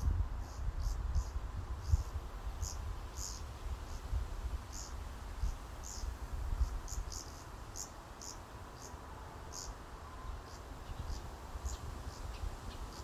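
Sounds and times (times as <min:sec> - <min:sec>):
wind rumble on microphone: 0:00.0 - 0:07.2, 0:10.3 - 0:13.0
small birds chirping: 0:00.4 - 0:04.0, 0:04.7 - 0:09.7.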